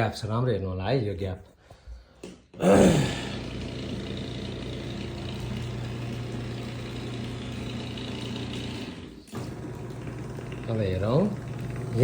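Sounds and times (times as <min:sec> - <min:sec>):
garage door opener motor humming: 0:02.8 - 0:12.0.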